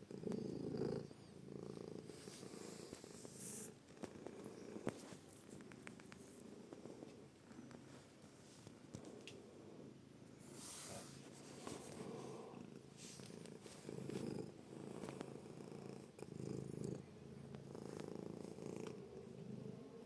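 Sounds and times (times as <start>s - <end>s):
kitten purring: 0.0s - 7.9s, 8.7s - 20.0s
faint rustles: 1.8s - 9.6s, 10.4s - 15.5s.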